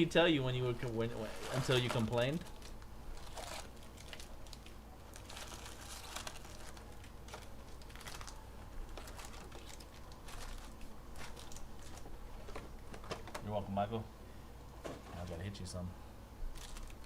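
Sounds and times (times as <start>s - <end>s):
foil wrappers crinkling: 0.8s - 13.5s, 16.5s - 17.0s.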